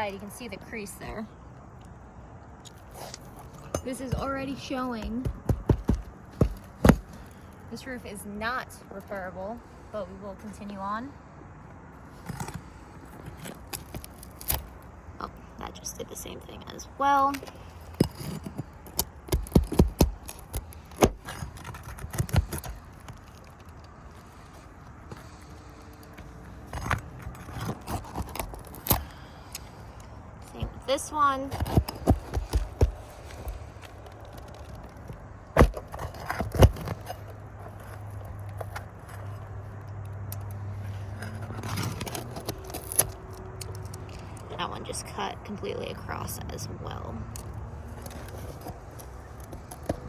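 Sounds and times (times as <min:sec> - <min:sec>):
low steady hum: 0:00.0 - 0:50.0
metal tool prying shingles: 0:03.0 - 0:07.5, 0:17.2 - 0:24.5, 0:25.1 - 0:29.2, 0:30.8 - 0:39.4.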